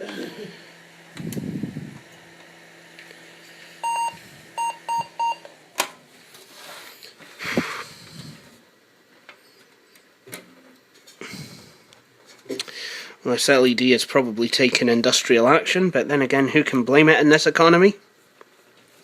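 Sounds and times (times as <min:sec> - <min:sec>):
computer speaker beeps: 0:03.8 - 0:05.4.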